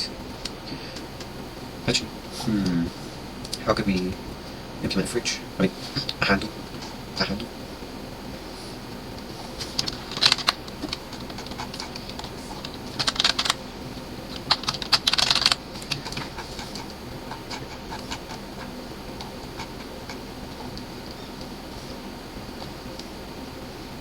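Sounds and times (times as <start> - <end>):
computer keyboard typing: 8.7 - 23.5.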